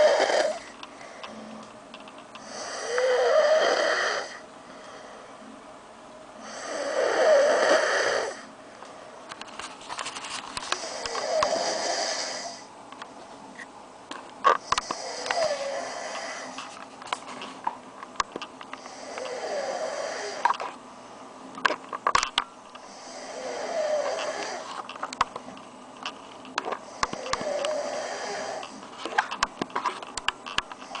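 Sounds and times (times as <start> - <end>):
pet snoring: 0.0 - 0.7, 2.4 - 4.4, 6.4 - 8.5, 10.7 - 12.7, 14.6 - 16.6, 18.8 - 20.6, 22.8 - 24.7, 26.8 - 28.8.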